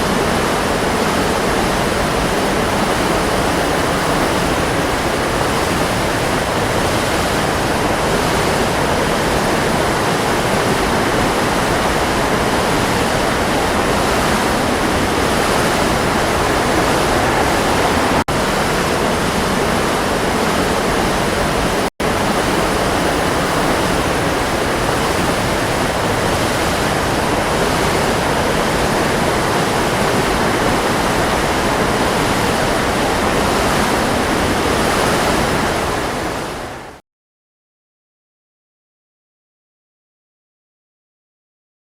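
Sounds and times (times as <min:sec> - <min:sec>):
waterfall roaring: 0:00.0 - 0:37.0.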